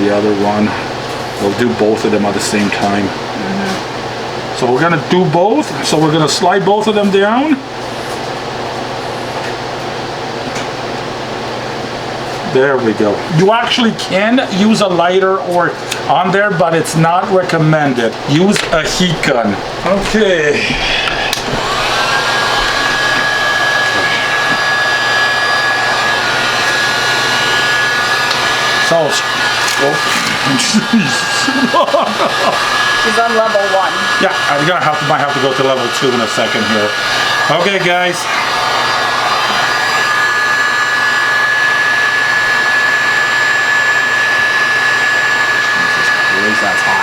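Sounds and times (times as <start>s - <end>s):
heat gun blowing: 17.1s - 47.0s
rush of hot air: 18.4s - 47.0s.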